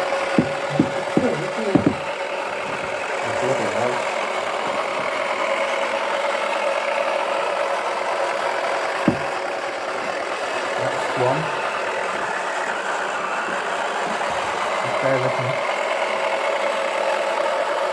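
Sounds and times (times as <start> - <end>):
sharp knocks: 0.3 - 5.4, 9.0 - 10.3.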